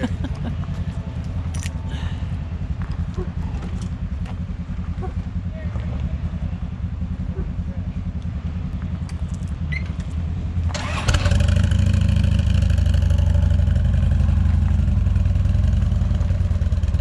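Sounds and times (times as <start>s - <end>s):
truck engine revving: 10.0s - 17.0s.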